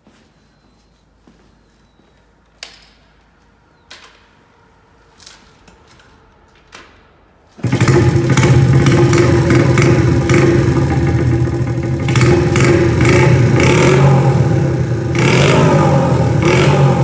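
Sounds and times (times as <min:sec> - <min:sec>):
motorcycle engine running: 0:07.6 - 0:17.0.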